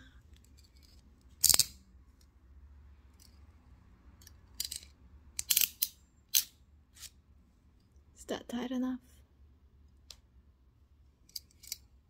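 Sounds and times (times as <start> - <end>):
handcuff ratchets clicking: 0.8 - 1.8, 4.2 - 6.5.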